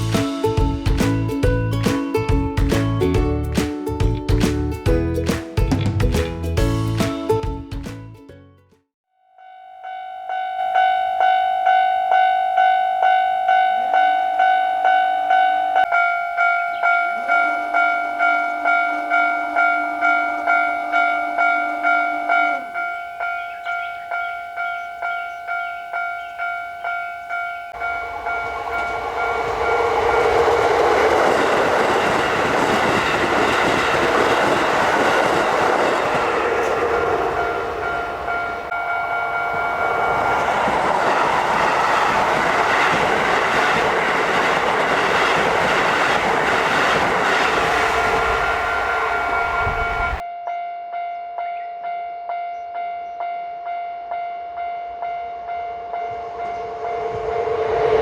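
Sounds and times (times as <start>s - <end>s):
level crossing bell ringing: 9.4s - 31.8s, 36.6s - 40.9s, 48.4s - 50.2s
train wheels clattering: 27.8s - 50.2s.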